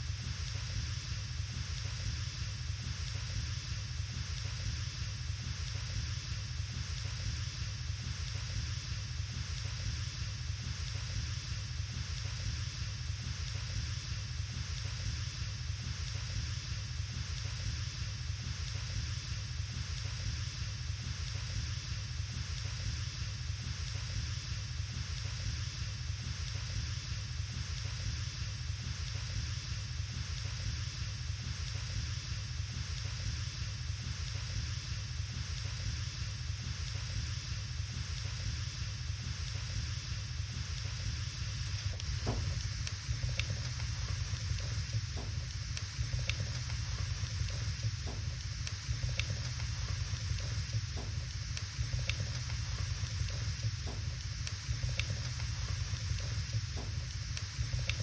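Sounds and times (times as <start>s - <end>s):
wood fire hissing: 0.0s - 58.0s
burning logs crackling and popping: 41.7s - 58.0s.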